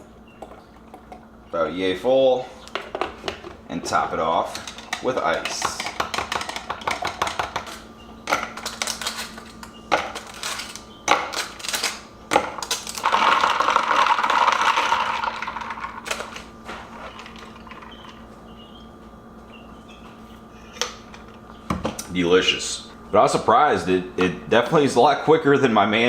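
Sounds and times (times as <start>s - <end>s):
ice cubes clinking in glass: 12.6s - 16.2s
ice rattling: 12.6s - 18.1s.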